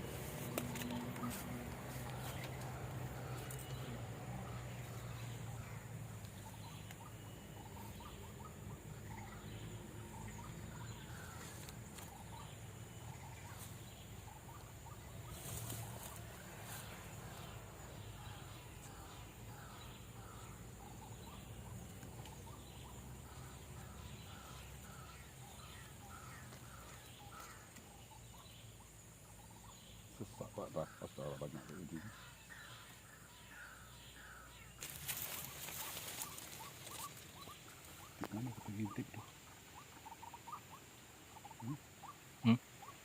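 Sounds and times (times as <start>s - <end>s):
outdoor background noise: 0.0s - 43.0s
waterhen calls: 35.3s - 43.0s.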